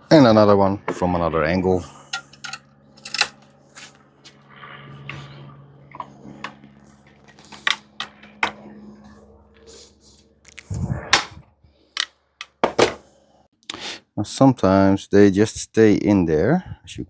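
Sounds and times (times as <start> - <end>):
hand riveter clicking: 2.2 - 3.4, 7.3 - 8.5, 12.4 - 12.6.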